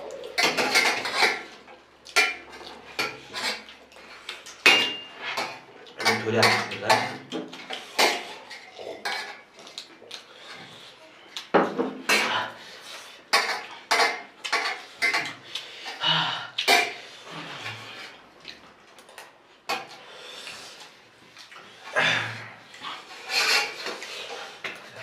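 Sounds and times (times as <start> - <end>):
spoons clinking on dishes: 2.1 - 3.6, 4.6 - 7.2.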